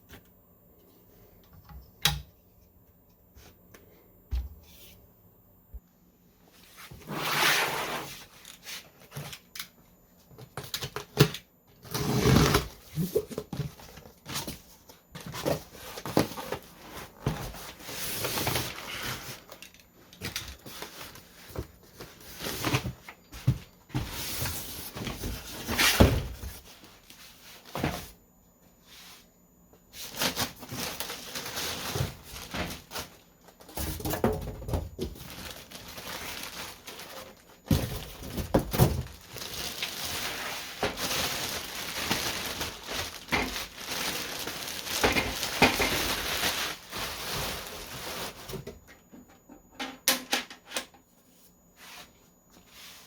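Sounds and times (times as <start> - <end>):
packaging rustling: 30.0 - 34.2, 35.0 - 48.6.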